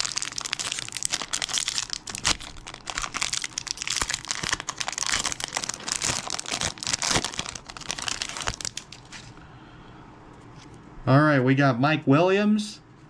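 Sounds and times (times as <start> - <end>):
wrapper tearing and crinkling: 0.0 - 9.4.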